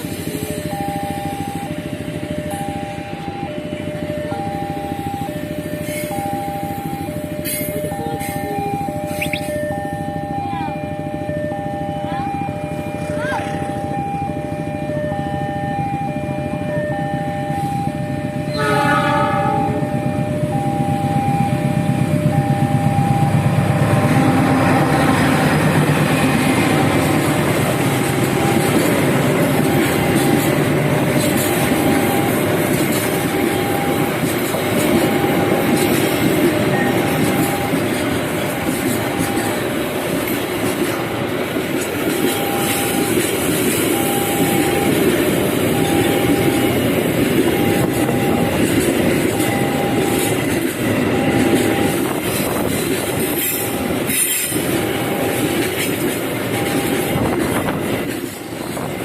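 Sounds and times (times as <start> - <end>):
electronic tone beeping: 0.4 - 14.3, 43.9 - 48.6
train wheels clattering on rails: 19.3 - 59.0.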